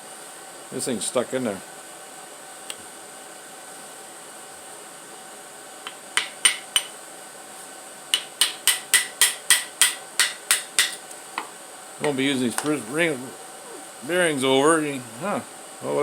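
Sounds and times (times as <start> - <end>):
hammer tapping on metal: 5.9 - 7.0, 8.1 - 11.0.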